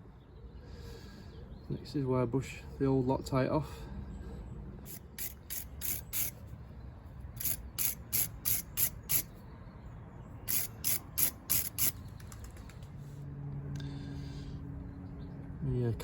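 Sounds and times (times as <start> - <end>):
wire brush scrubbing metal: 4.9 - 6.4, 7.4 - 9.3, 10.5 - 12.0.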